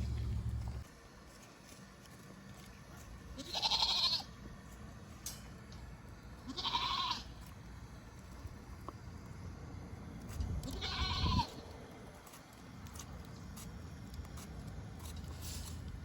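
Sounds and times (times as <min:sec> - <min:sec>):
goat bleating: 0:03.4 - 0:04.4, 0:06.4 - 0:07.4, 0:10.6 - 0:11.6.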